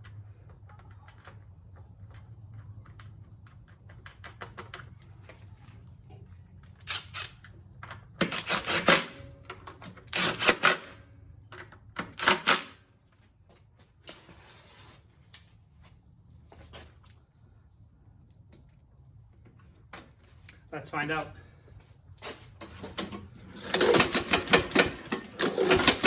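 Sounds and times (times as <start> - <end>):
tool clicking and rattling: 6.8 - 11.0, 11.6 - 12.8, 22.6 - 26.0.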